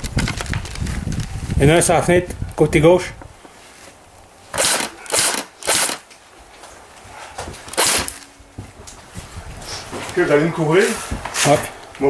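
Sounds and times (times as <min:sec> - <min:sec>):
airsoft rifle full-auto bursts: 0:04.6 - 0:06.0, 0:07.7 - 0:08.0.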